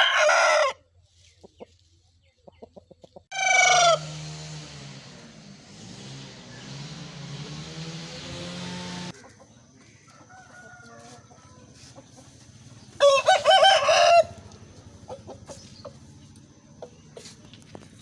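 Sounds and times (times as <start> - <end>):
fainter rooster calls: 0.0 - 0.8, 3.3 - 4.2, 12.9 - 14.5
rooster crowing: 0.0 - 0.8, 3.3 - 4.3, 10.1 - 11.8, 13.0 - 14.5.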